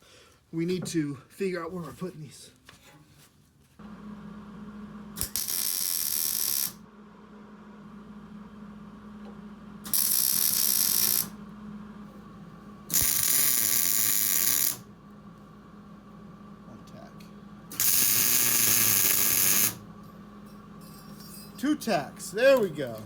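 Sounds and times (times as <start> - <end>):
steady low hum: 3.8 - 23.0
welding arc crackle and hiss: 5.2 - 6.8, 9.9 - 11.3, 12.9 - 14.9, 17.7 - 19.8.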